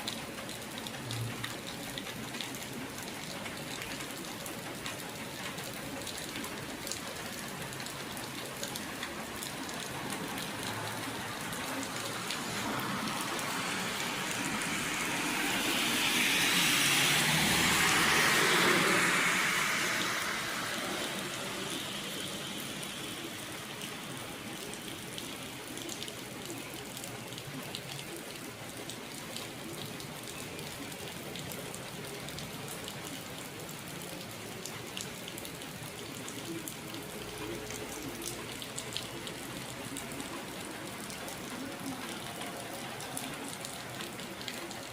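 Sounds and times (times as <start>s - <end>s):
rain pattering: 0.0s - 44.9s
rushing swell: 12.3s - 22.9s.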